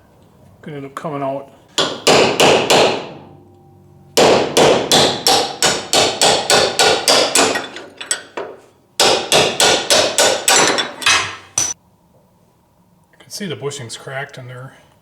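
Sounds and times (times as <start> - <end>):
hammer striking steel: 1.8 - 11.8.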